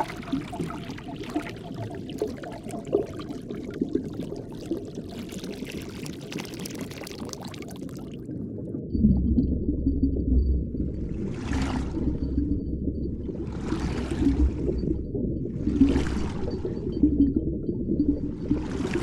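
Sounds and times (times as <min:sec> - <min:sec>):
underwater bubbling and crackling: 0:00.0 - 0:19.0
deep low rumble: 0:08.9 - 0:19.0.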